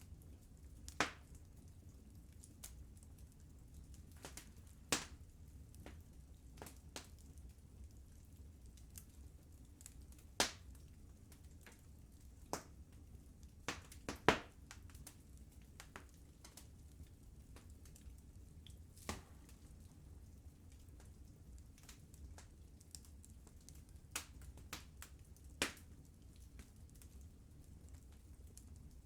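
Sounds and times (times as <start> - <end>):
fire low rumble: 0.0 - 29.0
wood fire crackling and popping: 0.0 - 29.0.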